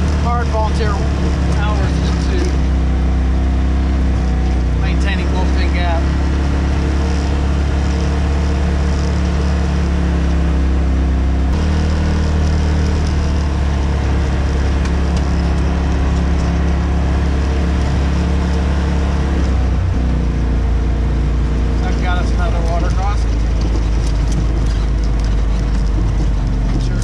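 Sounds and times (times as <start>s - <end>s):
vehicle engine droning: 0.0s - 27.0s.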